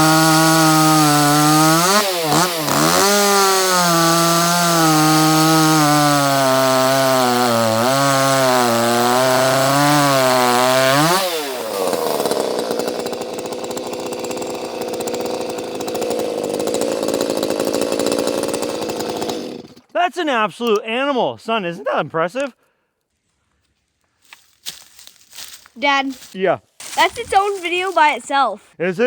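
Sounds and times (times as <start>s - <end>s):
chainsaw cutting wood: 0.0s - 19.9s, 26.8s - 28.4s.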